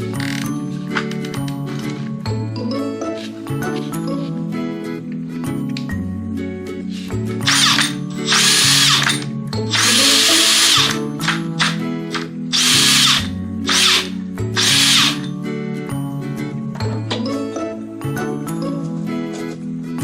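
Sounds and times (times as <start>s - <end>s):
background music: 0.0s - 20.0s
electric drill motor whine: 7.5s - 15.3s.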